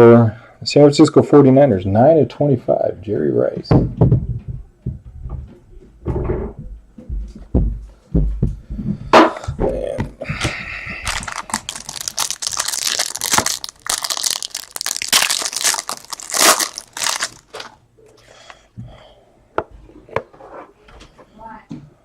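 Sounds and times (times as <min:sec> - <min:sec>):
plastic wrappers crinkling and tearing: 0:11.0 - 0:17.8.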